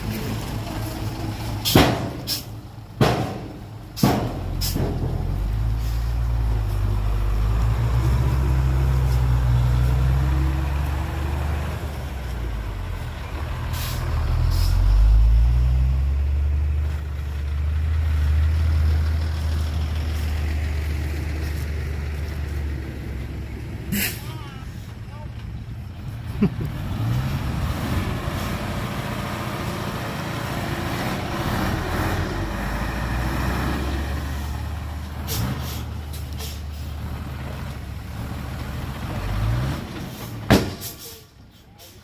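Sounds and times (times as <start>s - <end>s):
heavy diesel engine droning: 0.0s - 42.0s.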